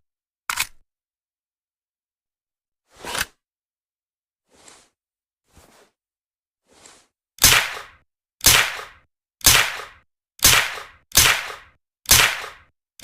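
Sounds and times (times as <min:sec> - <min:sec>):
suppressed gunshots: 0:07.4 - 0:12.7.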